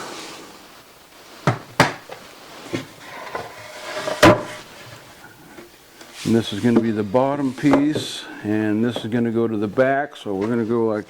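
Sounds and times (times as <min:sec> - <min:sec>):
wooden boards knocking: 0:01.4 - 0:02.9, 0:03.9 - 0:04.6, 0:07.6 - 0:08.2.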